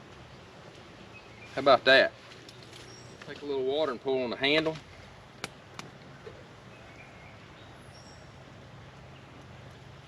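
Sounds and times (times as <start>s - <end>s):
faint bird chirp: 2.4s - 3.4s, 6.1s - 8.4s.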